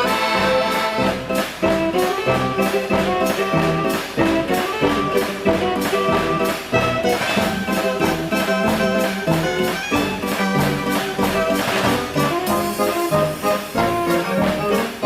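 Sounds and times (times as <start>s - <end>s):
fairground organ playing dance tune: 0.0s - 15.0s.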